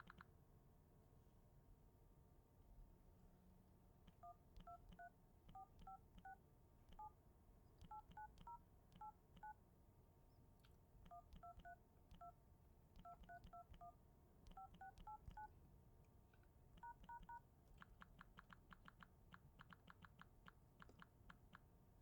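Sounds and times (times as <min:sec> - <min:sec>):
touch-tone keypad beeps: 0:04.2 - 0:06.4, 0:07.9 - 0:09.6, 0:11.1 - 0:12.4, 0:13.0 - 0:15.5, 0:16.8 - 0:17.4.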